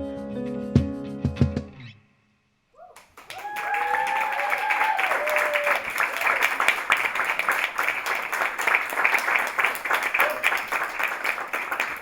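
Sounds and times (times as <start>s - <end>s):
person cheering: 2.8s - 6.6s, 10.1s - 10.7s
audience applauding: 3.0s - 12.0s.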